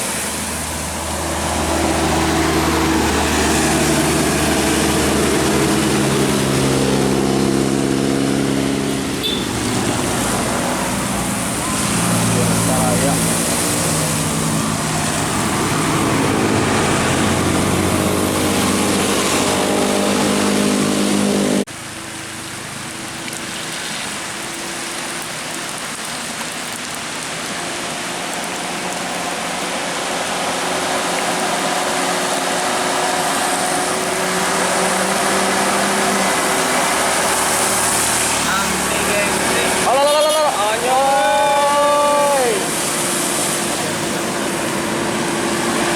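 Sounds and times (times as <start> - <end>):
bus engine running: 0.0 - 22.4.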